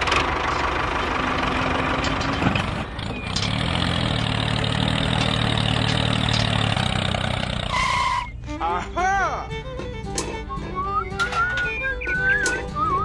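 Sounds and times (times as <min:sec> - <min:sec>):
small tractor engine running: 0:00.0 - 0:08.4.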